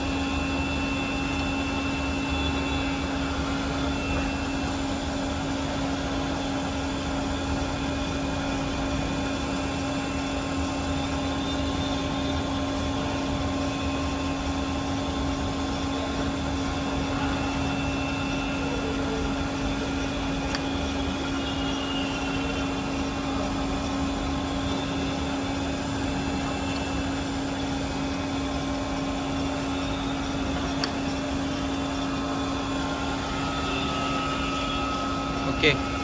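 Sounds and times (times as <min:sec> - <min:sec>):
grinder machine humming: 0:00.0 - 0:36.0.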